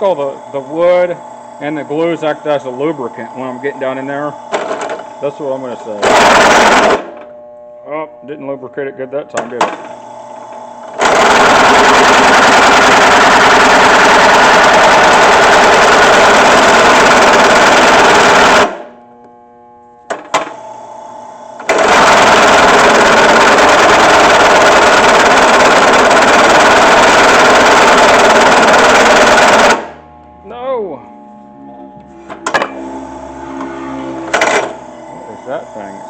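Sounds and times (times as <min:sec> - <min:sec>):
drill press cutting steel: 0:09.4 - 0:18.9, 0:21.6 - 0:30.0.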